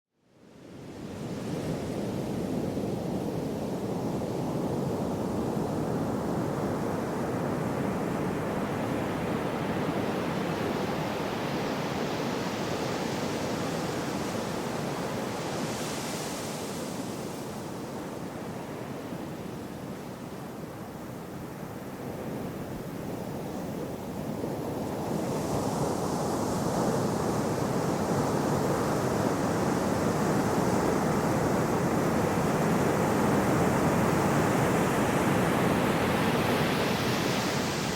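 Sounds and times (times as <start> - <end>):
sea waves washing in: 21.7 - 37.9.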